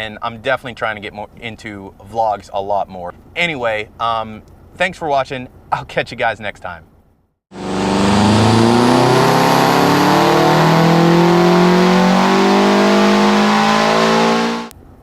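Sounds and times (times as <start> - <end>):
car engine accelerating: 7.5 - 14.7.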